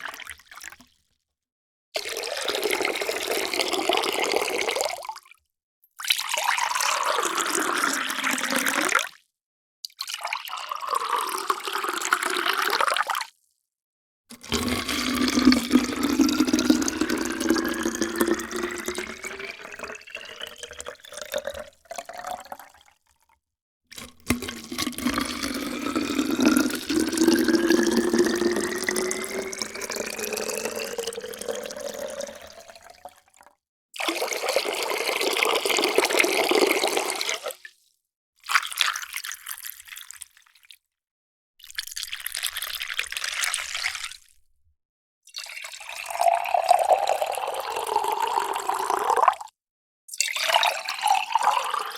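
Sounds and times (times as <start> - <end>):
water pouring into container: 2.0 - 5.2, 6.0 - 9.2, 10.0 - 13.3, 14.3 - 22.9, 23.9 - 37.7, 41.6 - 44.4, 45.3 - 49.5, 50.1 - 51.9.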